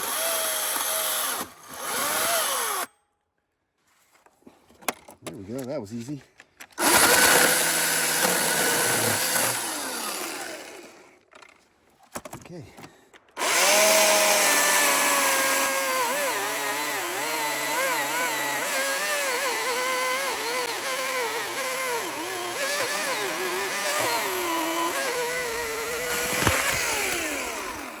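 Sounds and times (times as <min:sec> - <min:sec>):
chainsaw cutting through log: 0:00.0 - 0:02.9, 0:06.8 - 0:11.2, 0:13.4 - 0:28.0.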